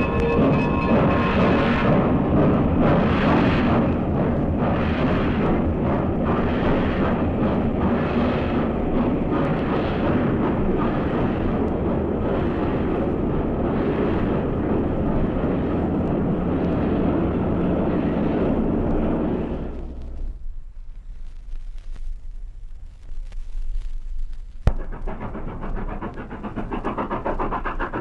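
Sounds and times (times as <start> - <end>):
steam locomotive rumbling: 0.0 - 20.9, 24.6 - 28.0.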